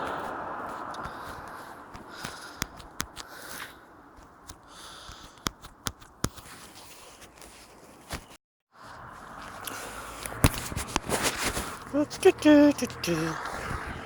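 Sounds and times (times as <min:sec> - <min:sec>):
sharp pops and clicks: 0:00.2 - 0:03.6, 0:04.2 - 0:06.6, 0:09.6 - 0:11.1.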